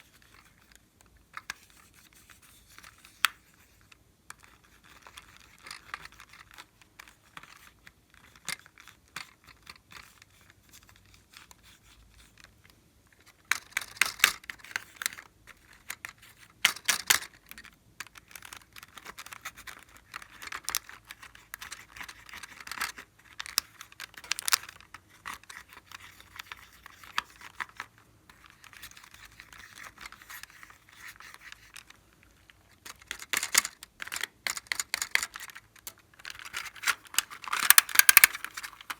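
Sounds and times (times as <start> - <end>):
slime crackling and clicking: 37.1 - 38.9.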